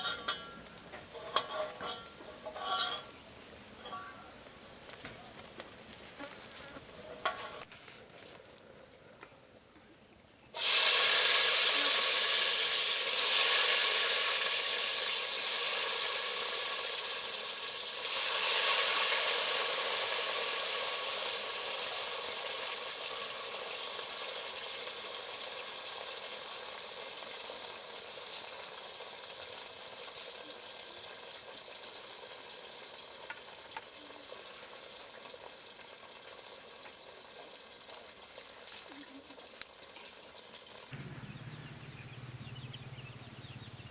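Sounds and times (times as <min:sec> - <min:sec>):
potato slices sizzling in oil: 0:00.0 - 0:04.9, 0:10.6 - 0:41.6.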